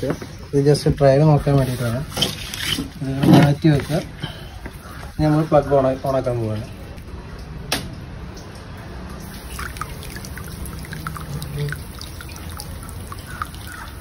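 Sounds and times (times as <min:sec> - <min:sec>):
water droplets spattering: 0:04.7 - 0:14.0.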